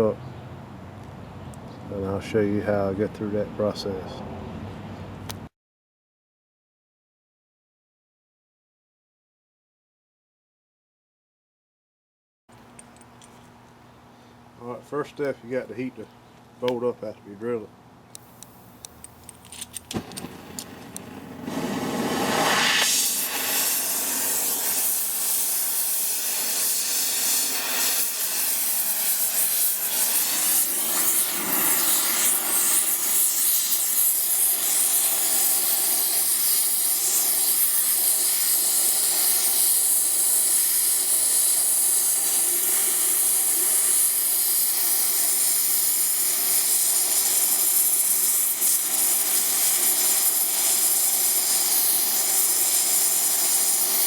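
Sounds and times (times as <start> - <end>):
gas torch flame hissing: 19.8 - 54.0.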